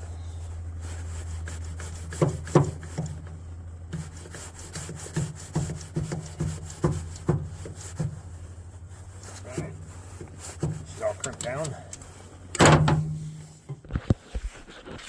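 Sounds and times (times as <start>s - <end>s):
crimping tool pump knocks: 12.6s - 13.8s.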